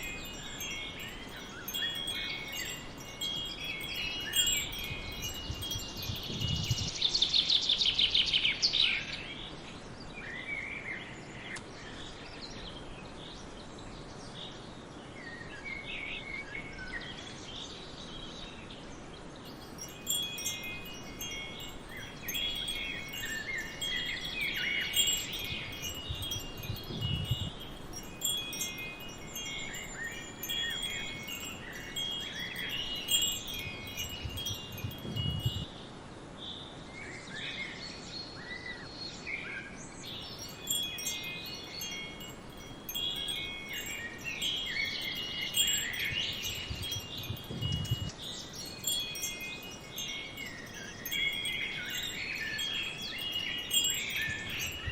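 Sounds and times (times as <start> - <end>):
wind chimes ringing: 0.0 - 7.4, 19.4 - 35.7, 40.0 - 54.9
birds chirping: 0.0 - 8.6, 19.4 - 35.6, 40.0 - 54.9
forest ambience: 0.0 - 36.6, 37.2 - 54.9.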